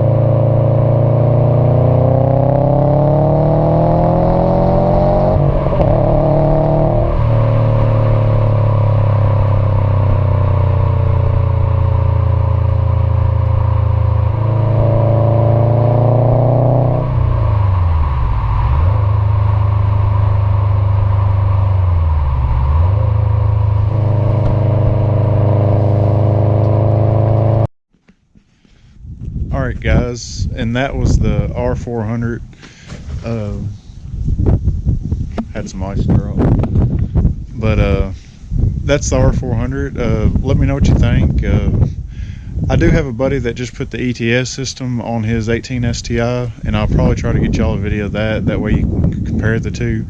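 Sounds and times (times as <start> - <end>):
car engine exhaust revving: 0.0 - 27.7.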